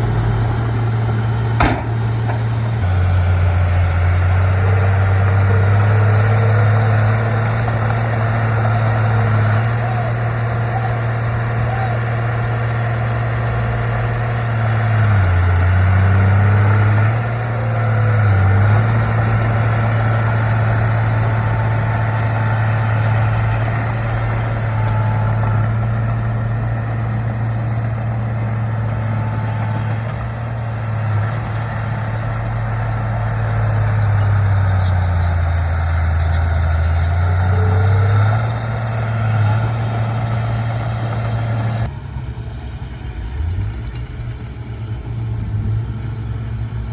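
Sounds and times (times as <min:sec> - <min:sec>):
bulldozer diesel engine running: 0:00.0 - 0:46.9.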